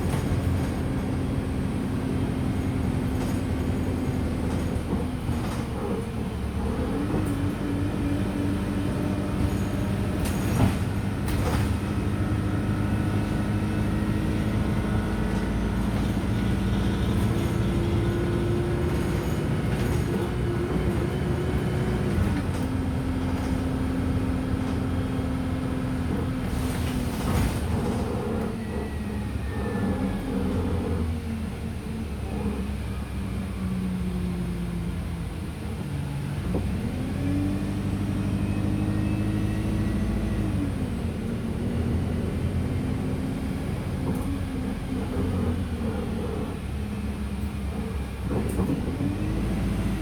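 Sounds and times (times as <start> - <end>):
bus engine and transmission drone: 0.0 - 50.0
road rumble: 0.0 - 50.0.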